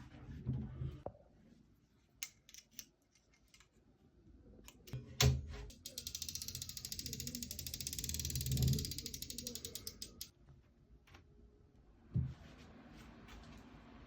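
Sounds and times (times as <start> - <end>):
laptop stand ratcheting: 5.7 - 10.3.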